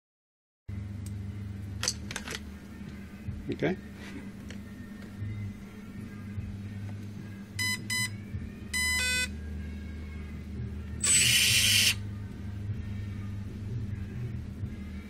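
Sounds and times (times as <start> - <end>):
machine low hum: 0.7 - 15.0
drill spindle whirring: 11.0 - 12.0.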